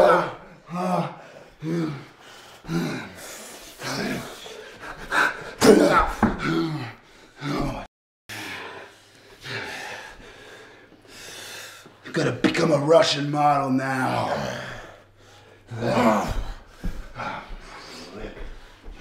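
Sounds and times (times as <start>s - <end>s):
heavy breathing: 0.0s - 5.6s, 6.2s - 12.0s, 14.1s - 19.0s
man groaning and gasping: 0.0s - 8.8s, 14.0s - 15.1s, 15.7s - 18.5s.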